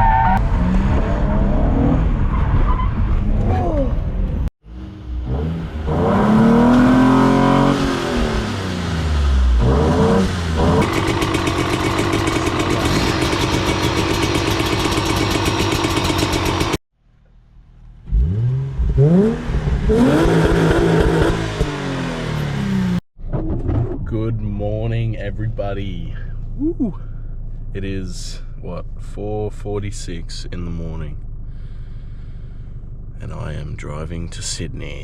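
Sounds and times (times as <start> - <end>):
car engine revving hard: 5.2 - 16.7, 18.1 - 23.0.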